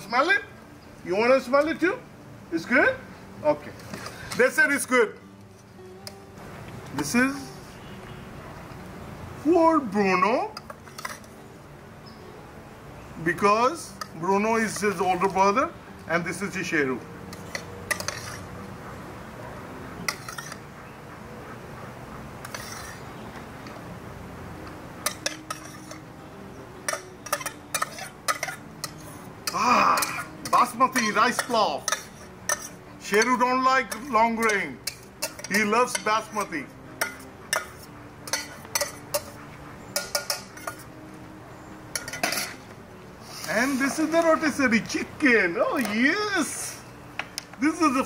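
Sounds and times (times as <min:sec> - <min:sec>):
dishes clicking and knocking: 0:17.3 - 0:18.4, 0:20.0 - 0:20.6, 0:25.0 - 0:26.0, 0:26.8 - 0:36.1, 0:37.0 - 0:40.9, 0:41.9 - 0:42.7.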